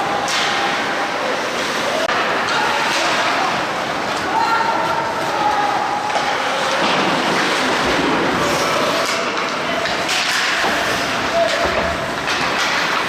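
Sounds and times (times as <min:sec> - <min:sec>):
spectator chatter: 0:00.0 - 0:13.0
skates scraping ice: 0:01.5 - 0:13.0
hockey sticks knocking puck: 0:02.1 - 0:05.0, 0:06.0 - 0:13.0
distant shouts: 0:10.7 - 0:12.1.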